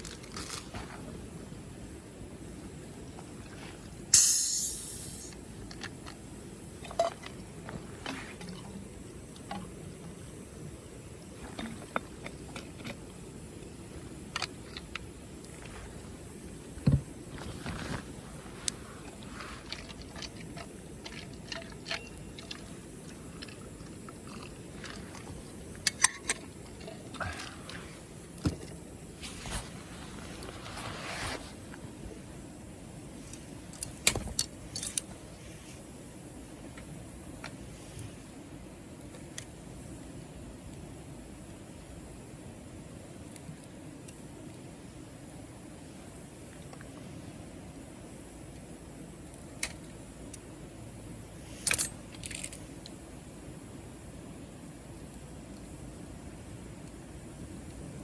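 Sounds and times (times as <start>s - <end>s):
fire pops and snaps: 0.0s - 1.1s
campfire crackling: 0.0s - 58.0s
low hiss of burning: 0.0s - 58.0s
rustle: 0.0s - 58.0s
sharp pops of fire: 4.1s - 5.4s.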